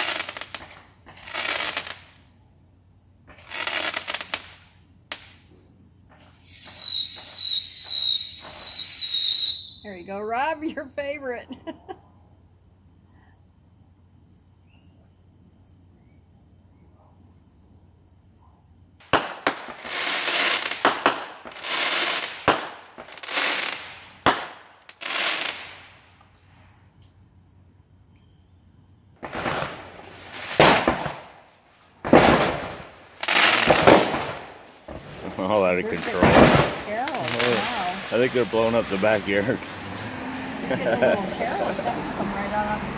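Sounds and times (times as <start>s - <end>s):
fireworks bursts and crackling: 0.0s - 2.2s, 3.2s - 11.4s, 19.0s - 26.6s, 29.2s - 42.9s.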